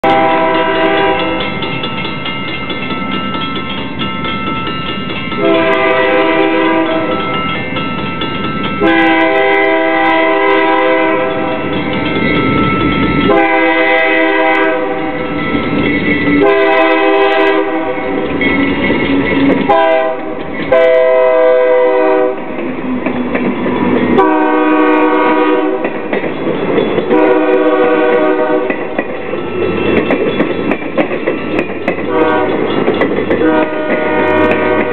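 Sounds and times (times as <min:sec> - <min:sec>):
locomotive air horn: 0:00.0 - 0:01.4, 0:05.4 - 0:07.2, 0:08.8 - 0:11.6, 0:13.3 - 0:15.2, 0:16.4 - 0:18.2, 0:19.7 - 0:22.5, 0:24.2 - 0:25.8, 0:27.1 - 0:28.8, 0:32.1 - 0:32.6, 0:33.4 - 0:34.9
rumble of passing train: 0:00.0 - 0:34.9.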